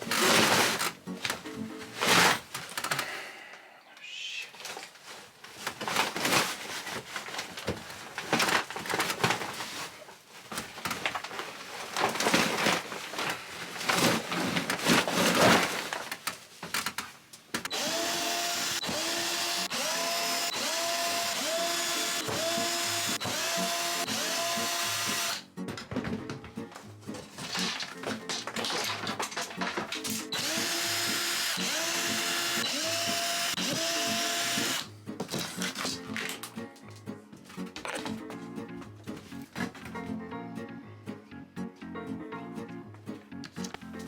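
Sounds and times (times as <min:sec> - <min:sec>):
power drill whining: 0:17.7 - 0:25.4, 0:30.3 - 0:34.9.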